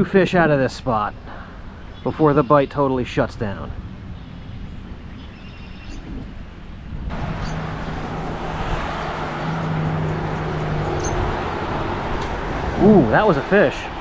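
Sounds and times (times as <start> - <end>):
steady rushing noise: 6.7 - 14.0.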